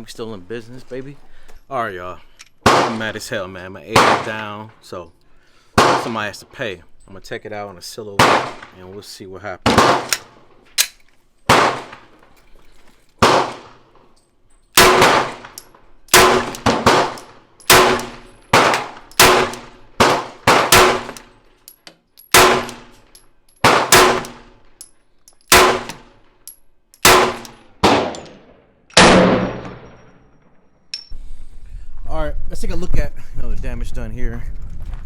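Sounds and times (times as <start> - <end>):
pistol shots: 2.6 - 3.1, 3.9 - 4.4, 5.8 - 6.2, 8.2 - 8.8, 9.7 - 10.4, 11.5 - 12.1, 13.2 - 13.8, 14.8 - 21.3, 22.3 - 23.0, 23.6 - 24.6, 25.5 - 26.2, 27.0 - 30.1.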